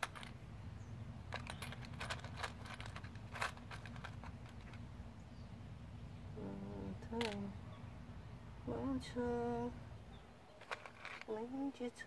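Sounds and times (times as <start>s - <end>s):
hand tools clicking and tapping: 0.0s - 0.4s, 1.3s - 4.8s
low steady hum: 0.0s - 12.0s.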